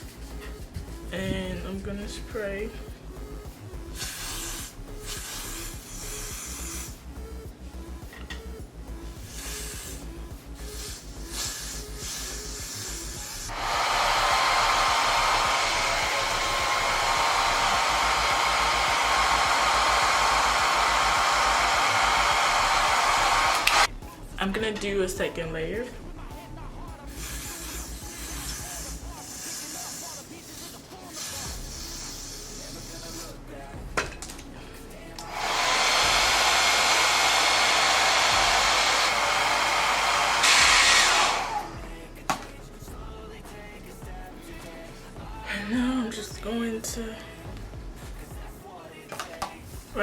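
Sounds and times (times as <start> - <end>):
hair dryer running: 13.2 - 23.9, 35.2 - 41.8.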